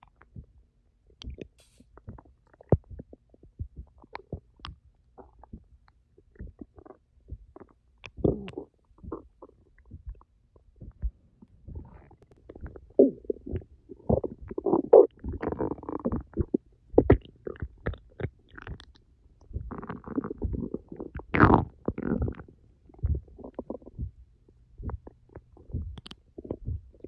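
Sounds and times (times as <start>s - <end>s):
stomach gurgling: 1.2s - 27.0s.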